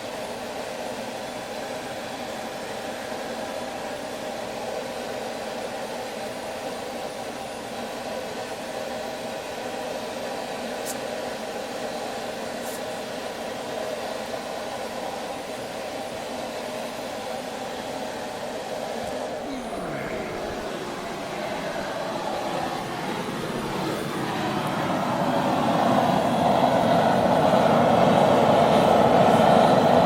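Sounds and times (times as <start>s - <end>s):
forge air blast roar: 19.2s - 27.0s.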